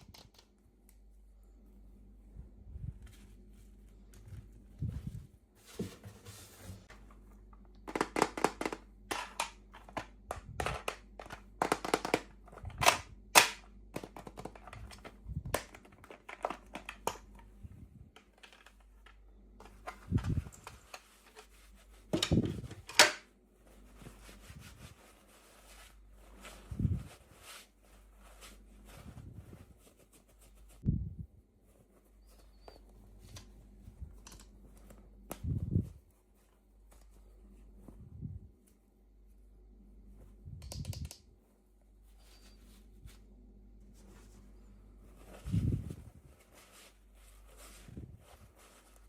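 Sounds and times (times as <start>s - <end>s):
plastic snap: 40.6s - 41.2s.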